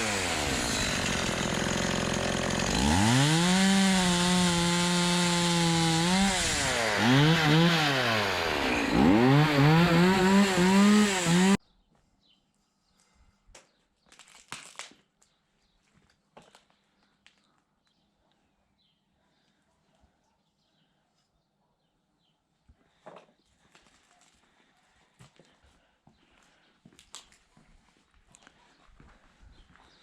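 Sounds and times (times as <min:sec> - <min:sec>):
chainsaw cutting wood: 0:00.0 - 0:11.6.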